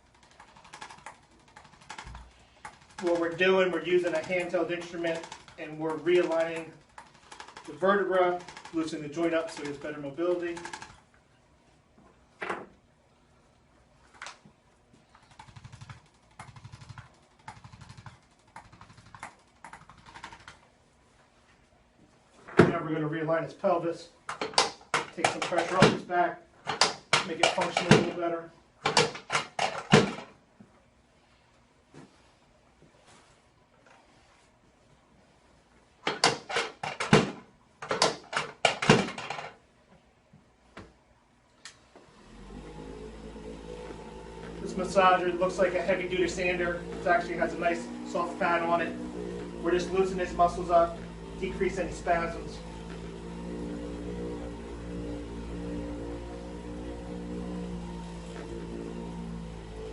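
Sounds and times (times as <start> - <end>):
rapid mechanical taps: 0.0 - 7.7, 8.3 - 9.9, 15.2 - 20.6.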